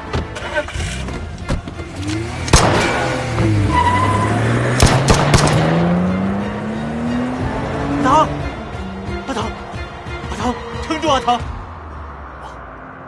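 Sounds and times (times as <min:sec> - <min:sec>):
tense music: 0:00.0 - 0:13.0
sharp gunshots: 0:02.5 - 0:03.1, 0:04.8 - 0:05.8.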